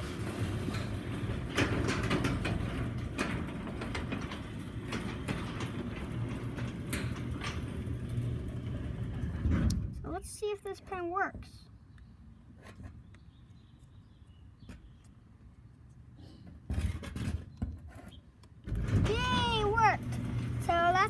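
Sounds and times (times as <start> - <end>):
clicks and rattles: 0.0 - 9.7
garage door opener rumbling: 0.0 - 10.0, 18.6 - 21.0.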